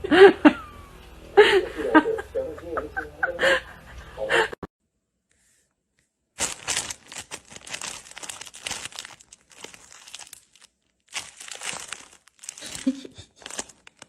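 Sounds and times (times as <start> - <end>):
crinkling and rustling: 6.4 - 14.0.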